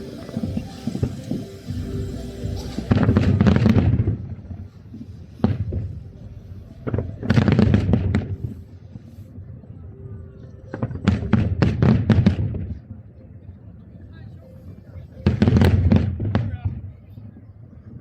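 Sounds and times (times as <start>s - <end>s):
fireworks bursting: 0.0s - 9.6s, 15.2s - 17.4s.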